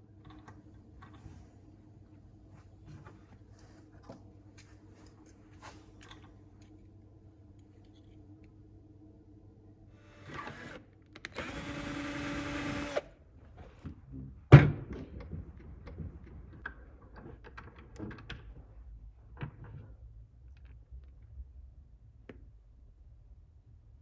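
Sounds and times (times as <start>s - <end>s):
small electric power tool running: 10.0s - 13.0s.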